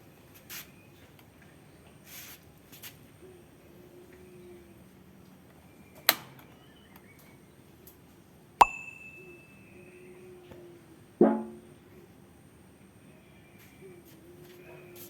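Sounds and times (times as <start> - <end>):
sharp knocks with ringing tone: 8.6 - 9.4.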